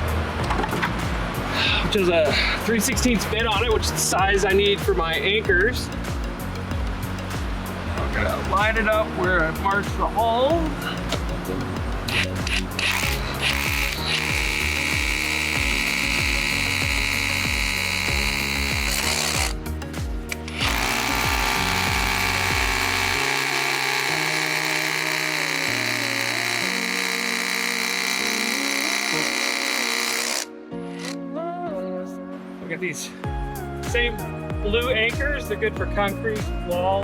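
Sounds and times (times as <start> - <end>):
background music: 0.0 - 37.0
hammer drill boring into brick: 12.1 - 19.6, 20.3 - 31.2.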